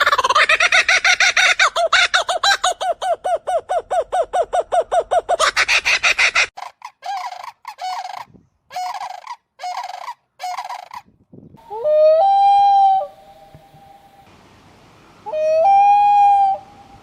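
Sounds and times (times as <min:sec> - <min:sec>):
long rising bird call: 0:11.6 - 0:17.0.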